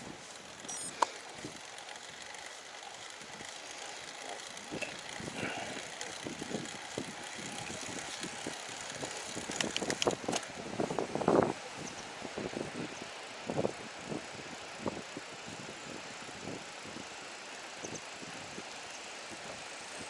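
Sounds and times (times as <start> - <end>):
bike tyre and drivetrain noise: 0.0 - 20.0
sharp clicks: 0.6 - 10.5.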